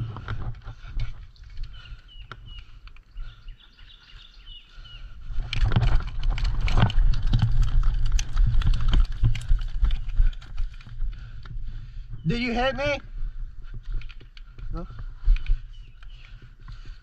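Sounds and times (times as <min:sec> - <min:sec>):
small bird chirping: 0:01.3 - 0:05.2
close rustling and clicking: 0:05.3 - 0:11.7, 0:13.6 - 0:17.0.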